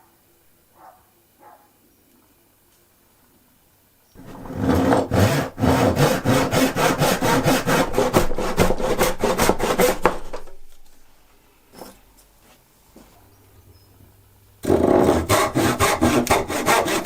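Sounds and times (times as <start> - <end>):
hand saw cutting wood: 4.2 - 10.6, 14.6 - 17.0.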